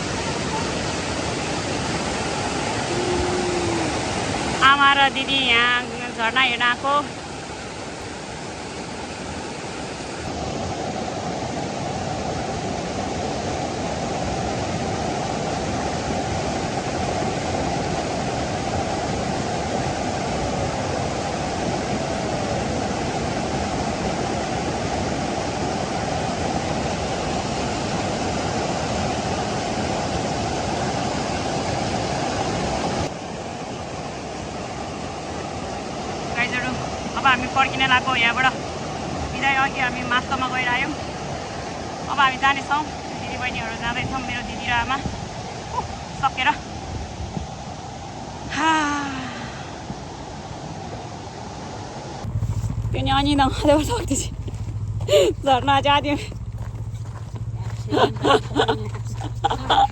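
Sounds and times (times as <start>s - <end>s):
waterfall rushing: 0.0s - 45.7s.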